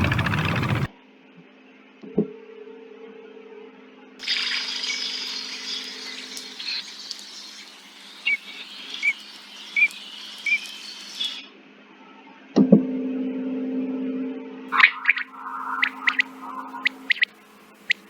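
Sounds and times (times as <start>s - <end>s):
chorus of bird chirps: 0.0s - 0.9s, 4.2s - 11.4s, 14.7s - 18.0s.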